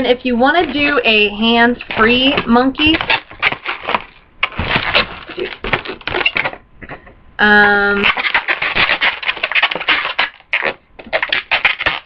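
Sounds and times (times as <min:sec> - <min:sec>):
latex balloons rubbing and crackling: 0:00.2 - 0:06.6, 0:07.8 - 0:12.0
balloon squeak: 0:01.8 - 0:06.6, 0:07.8 - 0:12.0.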